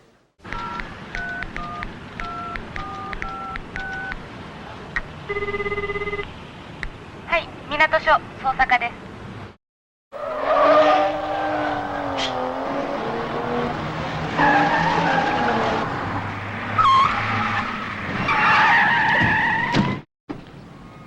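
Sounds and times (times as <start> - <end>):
car tyres squealing: 10.1 - 20.0.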